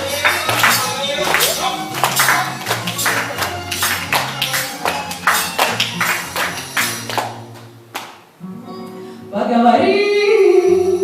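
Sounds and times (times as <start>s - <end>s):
fast strummed guitar chords: 0.0s - 7.6s.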